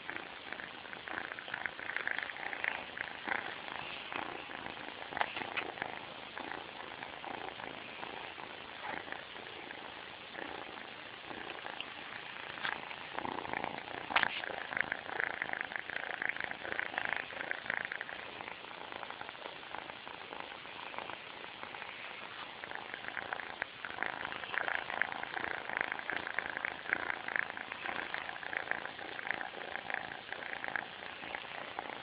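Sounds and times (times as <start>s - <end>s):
kitten snoring: 0.0s - 32.0s.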